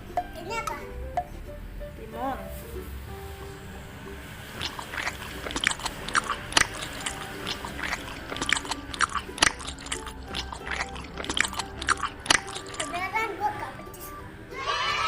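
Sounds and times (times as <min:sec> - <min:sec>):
chewing and biting crunches: 0:04.5 - 0:13.1
mouth clicks: 0:04.6 - 0:13.0.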